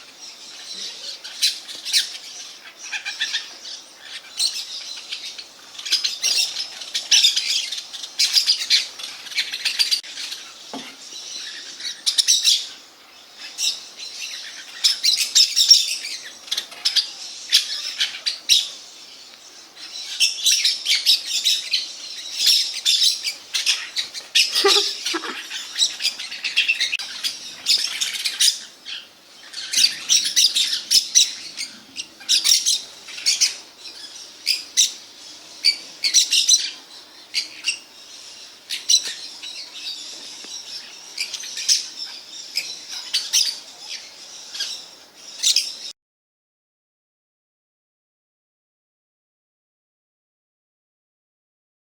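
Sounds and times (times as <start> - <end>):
parrots screeching: 23.2 - 30.8.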